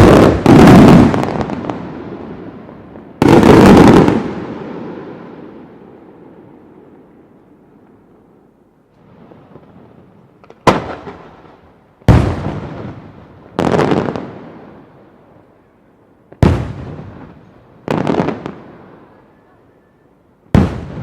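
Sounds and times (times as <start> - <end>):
firework bangs with rumbling echo: 0.0 - 2.4, 3.0 - 5.8, 9.0 - 14.6, 16.4 - 18.7, 20.5 - 21.0.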